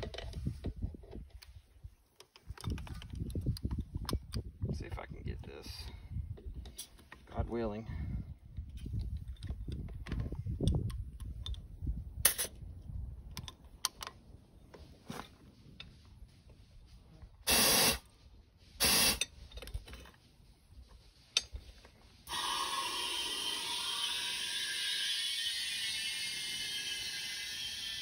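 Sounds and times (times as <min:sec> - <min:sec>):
rushing air bursts: 0:15.9 - 0:19.7, 0:20.7 - 0:28.0.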